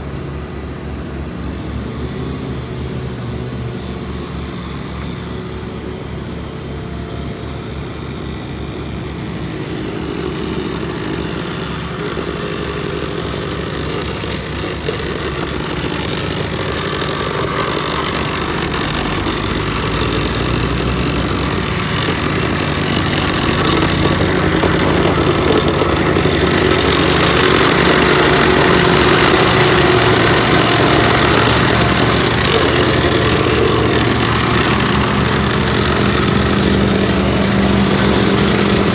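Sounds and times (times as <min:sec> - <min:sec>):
paving machinery engines: 0:00.0 - 0:38.9.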